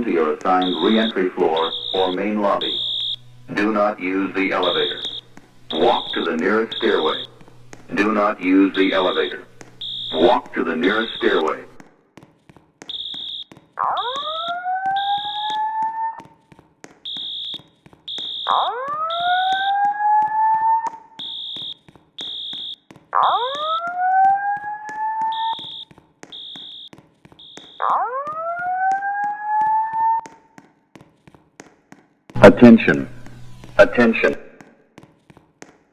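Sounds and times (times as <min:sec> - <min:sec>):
high-pitched fire alarm beeps: 0:00.0 - 0:11.8, 0:12.8 - 0:16.2, 0:17.0 - 0:30.2.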